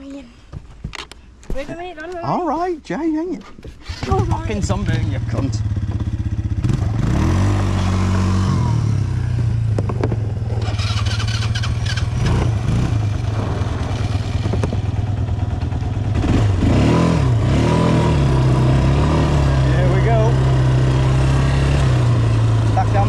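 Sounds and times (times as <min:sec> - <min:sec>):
bike knocks and rattles: 0:03.6 - 0:06.8, 0:09.7 - 0:10.6, 0:13.3 - 0:16.4
quad bike engine revving: 0:03.8 - 0:23.0.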